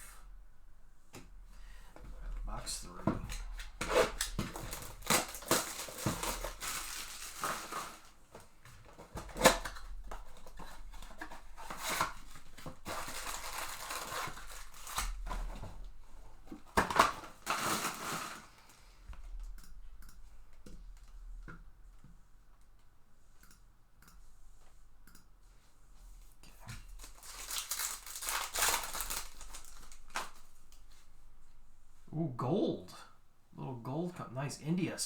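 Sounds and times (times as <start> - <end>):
cardboard and plastic wrapper tearing: 3.3 - 8.2, 8.9 - 15.8, 16.7 - 18.7, 26.8 - 30.8.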